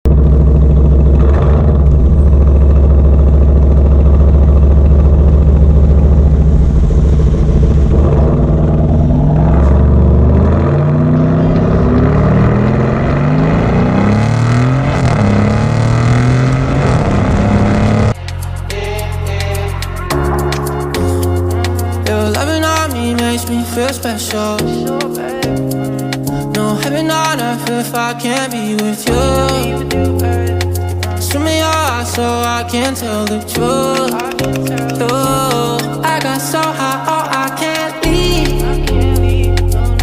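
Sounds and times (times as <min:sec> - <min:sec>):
loud deep car exhaust revving: 0:00.1 - 0:18.2
music: 0:18.2 - 0:40.0.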